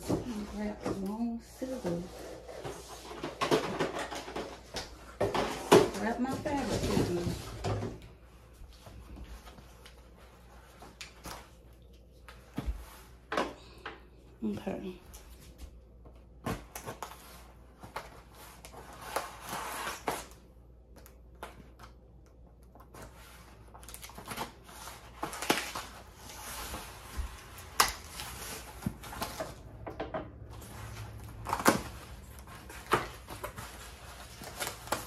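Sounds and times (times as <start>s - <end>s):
packaging scraping and rustling: 22.9s - 29.7s, 30.5s - 35.0s.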